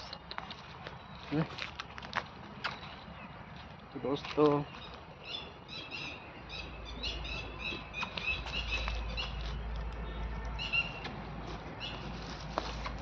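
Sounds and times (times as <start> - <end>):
small birds chirping: 0.0 - 9.7, 10.6 - 11.1, 11.8 - 12.2.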